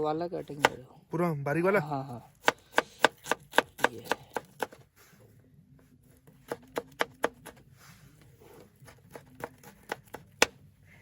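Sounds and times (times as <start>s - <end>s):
knife chopping on board: 0.5s - 0.8s, 2.4s - 4.8s, 6.4s - 7.6s, 8.8s - 10.6s.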